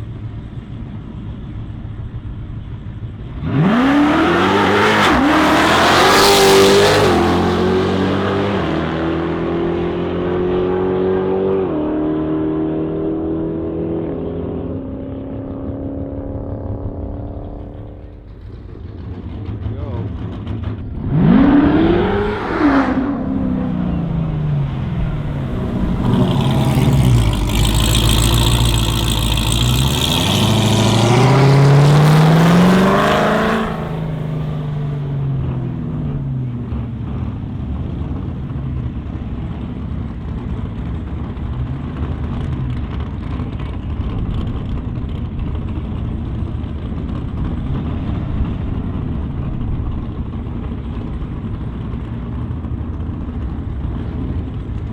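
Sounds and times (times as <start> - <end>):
car engine revving: 3.2 - 51.9.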